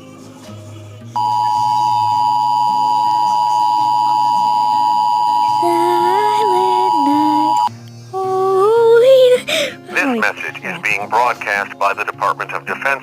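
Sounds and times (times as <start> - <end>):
two-tone alert tone: 1.2 - 7.7.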